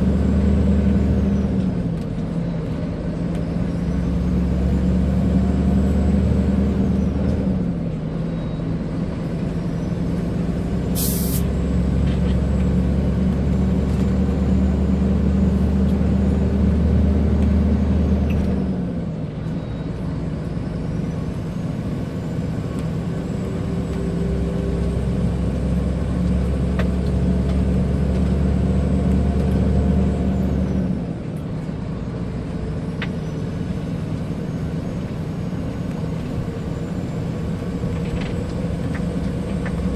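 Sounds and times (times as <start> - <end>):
diesel truck engine: 0.0 - 39.9
compressed air hiss: 11.0 - 11.5.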